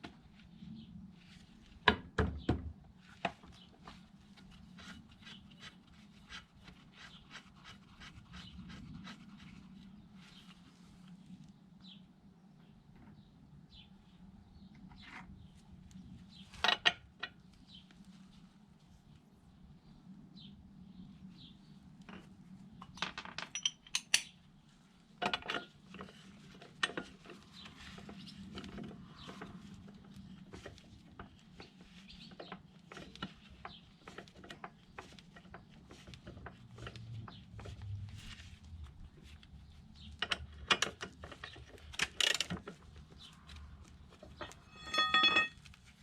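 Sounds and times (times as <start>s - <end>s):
metal tools clinking: 44.2s - 45.7s.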